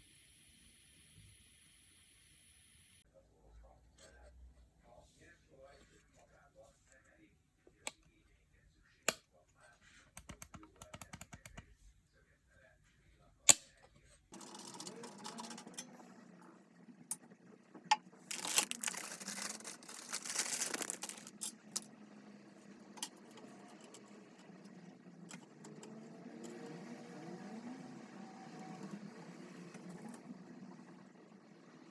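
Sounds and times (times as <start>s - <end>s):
computer parts clicking: 17.9s - 21.9s
rustling: 18.3s - 21.7s.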